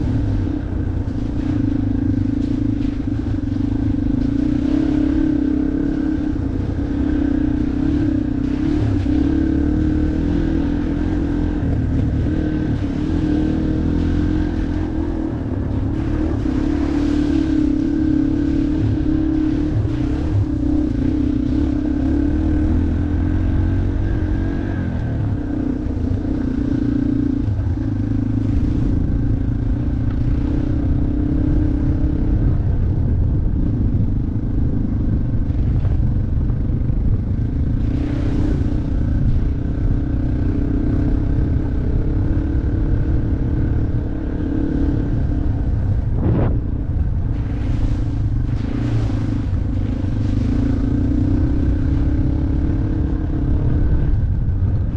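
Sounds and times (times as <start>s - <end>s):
low rumble: 0.0s - 54.9s
motorcycle engine running: 0.0s - 54.9s.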